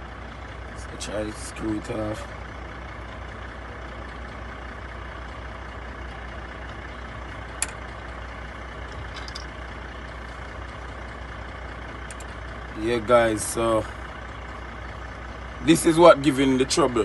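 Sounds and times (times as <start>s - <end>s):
truck engine idling: 0.0s - 17.0s
sharp click: 9.1s - 9.5s.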